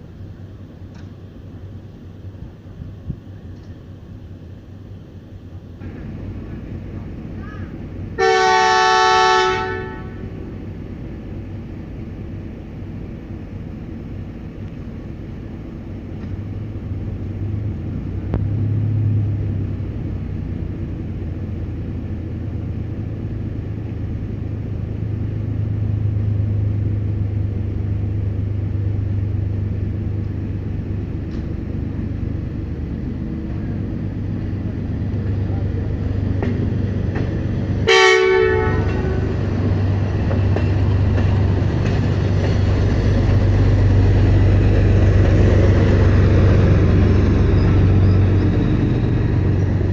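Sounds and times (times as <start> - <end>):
diesel train engine rumbling: 0.0 - 49.9
train horn blast: 8.2 - 10.4, 37.8 - 39.5.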